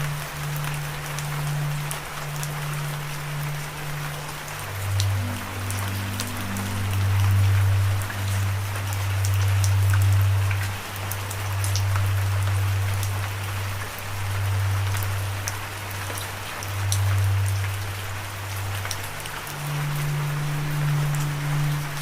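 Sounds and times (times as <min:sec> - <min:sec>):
loud low droning tone: 0:00.0 - 0:15.4
rain drops pattering: 0:00.0 - 0:22.0.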